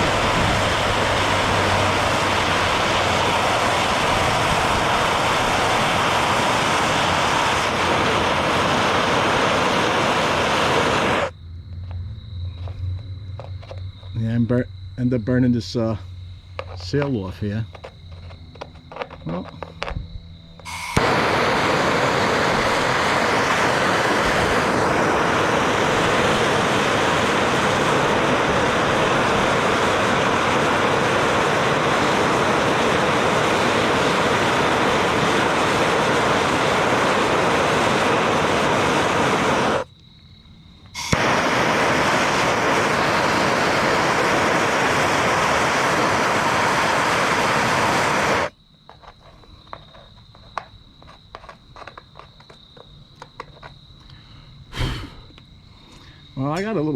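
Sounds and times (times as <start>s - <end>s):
torch flame hissing: 0.0s - 11.3s, 20.6s - 39.9s, 40.9s - 48.5s, 54.7s - 55.4s
torch igniter click: 20.6s - 23.6s, 40.9s - 43.3s.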